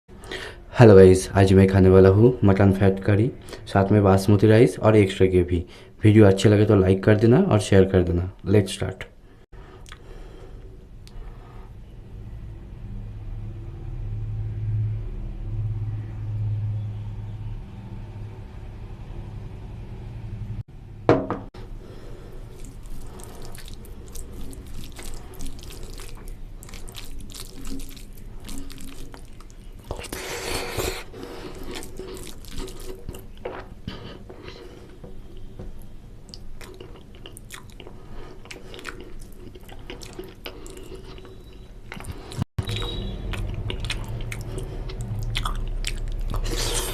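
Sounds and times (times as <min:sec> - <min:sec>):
sharp knock: 0:21.1 - 0:21.5
wet squelching of eating: 0:21.8 - 0:46.9.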